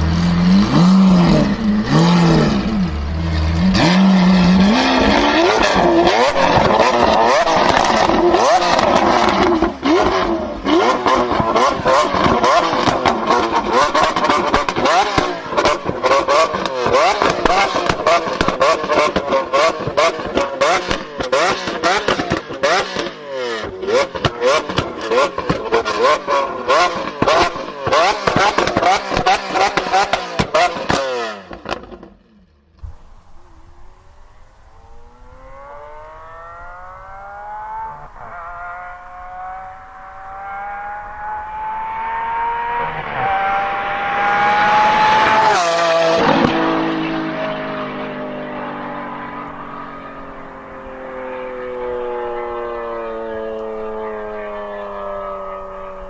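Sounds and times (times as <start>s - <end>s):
exhaust pops: 0.0s - 36.4s
car engine revving: 0.0s - 56.0s.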